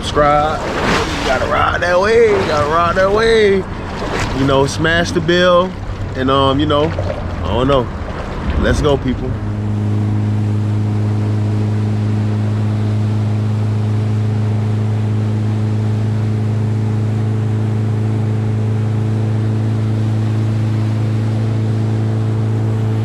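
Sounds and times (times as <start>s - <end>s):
wind noise: 0.0s - 10.6s
motorboat engine humming: 0.0s - 23.0s
water noise: 0.0s - 23.0s.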